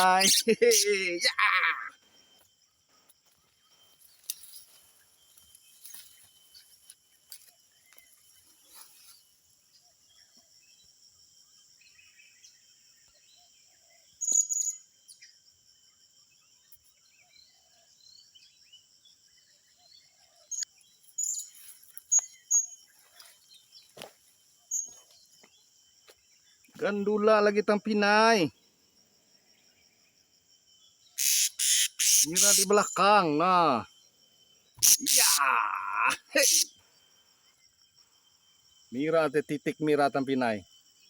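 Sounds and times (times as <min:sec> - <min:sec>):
small birds chirping: 0:00.0 - 0:02.8, 0:16.5 - 0:27.2, 0:27.8 - 0:39.0
insects droning: 0:00.0 - 0:41.0.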